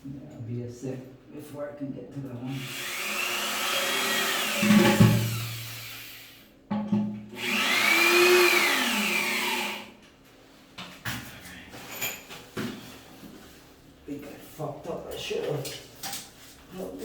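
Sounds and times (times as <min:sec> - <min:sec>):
power drill motor whine: 0:02.6 - 0:06.3, 0:07.4 - 0:09.9.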